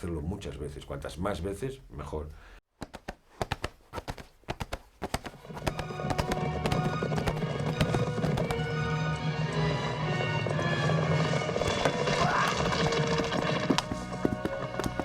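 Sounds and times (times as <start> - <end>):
clip-clop hoofbeats: 2.8 - 8.8, 11.6 - 15.0
music: 5.8 - 15.0.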